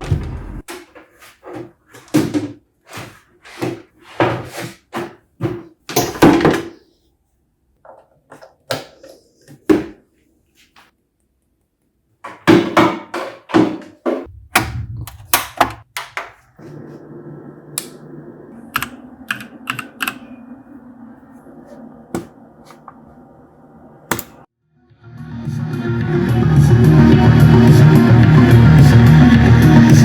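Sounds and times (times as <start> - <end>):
steady low hum: 14.3 - 24.5.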